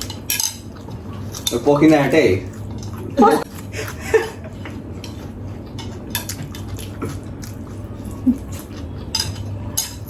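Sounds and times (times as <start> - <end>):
chewing noodles: 2.4 - 10.0
utensils scraping on plates: 8.5 - 10.0.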